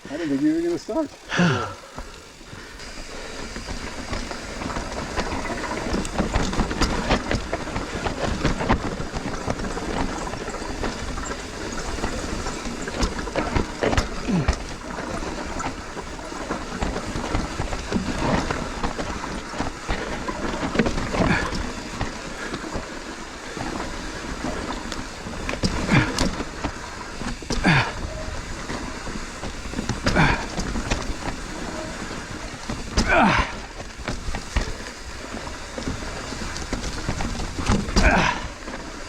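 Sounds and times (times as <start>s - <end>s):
bike rattling and knocking: 0.0s - 39.0s
bike tyres rolling over rocks: 0.0s - 39.0s
rider grunting: 13.8s - 15.5s, 21.1s - 22.3s, 25.7s - 26.6s, 27.4s - 28.6s, 29.9s - 31.7s, 32.8s - 33.9s, 37.8s - 38.8s.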